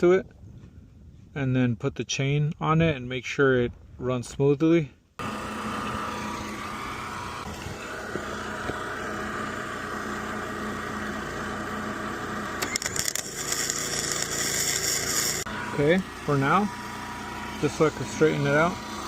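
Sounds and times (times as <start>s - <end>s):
engine running steadily: 5.2s - 19.0s
arc welder crackling hiss: 12.6s - 15.5s.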